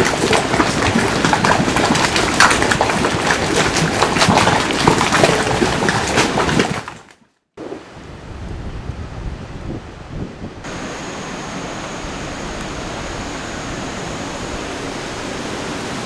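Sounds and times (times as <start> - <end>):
falling water splashing: 10.6 - 16.0.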